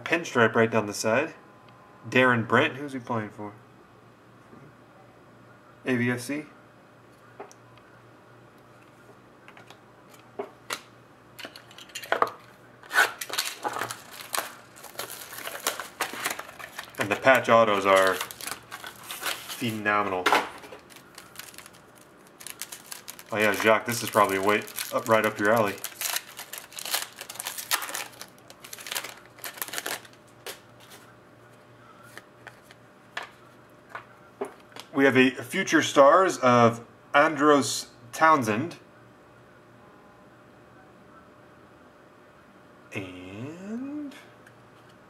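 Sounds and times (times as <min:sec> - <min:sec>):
cards clicking and rustling: 0:09.5 - 0:31.0
wrappers crinkling and cards shuffling: 0:10.1 - 0:31.1, 0:32.0 - 0:33.5.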